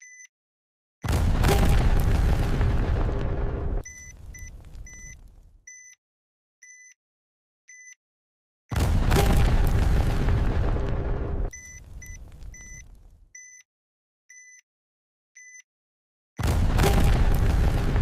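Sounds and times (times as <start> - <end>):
loud explosion blast: 1.1 - 5.5, 8.7 - 13.1, 16.4 - 18.0
electronic bomb timer beeps: 3.8 - 6.0, 11.5 - 13.6.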